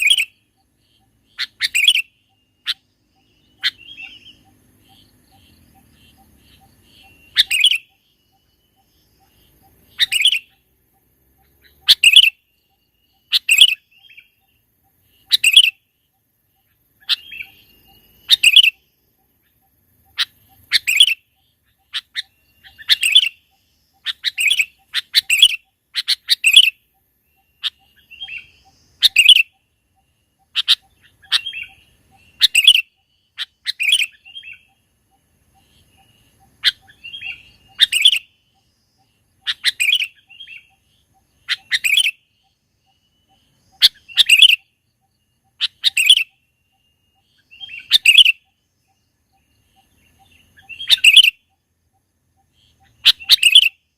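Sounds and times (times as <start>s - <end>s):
bulbul calling: 0.0s - 53.9s.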